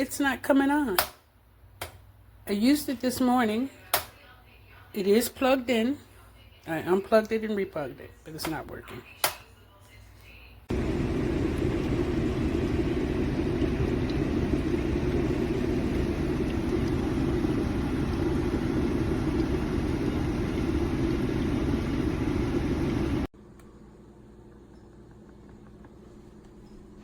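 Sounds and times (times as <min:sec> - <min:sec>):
water boiling in kettle: 0:10.7 - 0:23.3.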